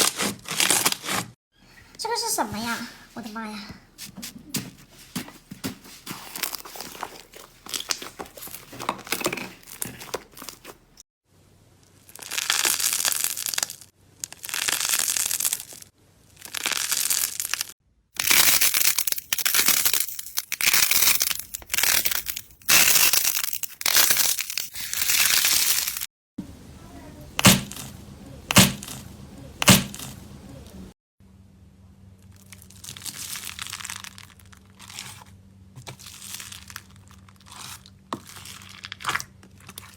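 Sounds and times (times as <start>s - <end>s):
crunchy slime crinkling and crackling: 4.5s - 11.0s, 11.9s - 26.1s, 32.2s - 39.9s
sharp loud snaps: 28.5s - 29.0s, 29.6s - 30.2s.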